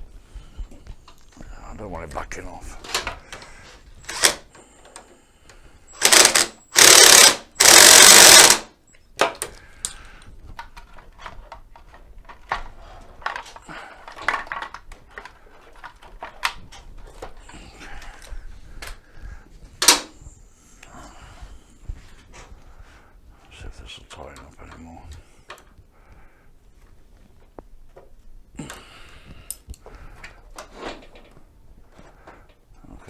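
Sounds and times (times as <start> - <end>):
power tool driving bolt: 4.1 - 4.5, 5.9 - 8.7, 19.8 - 20.1
tools and metal parts clicking: 5.9 - 8.6.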